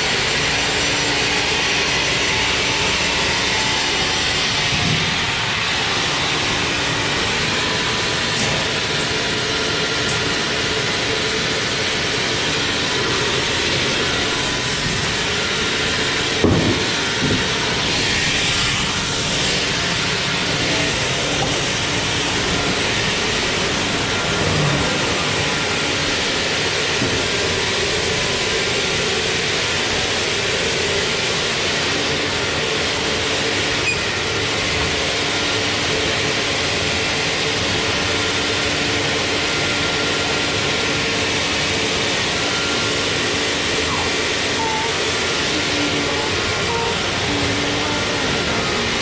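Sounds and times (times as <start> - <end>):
sawmill machinery running: 0.0 - 49.0.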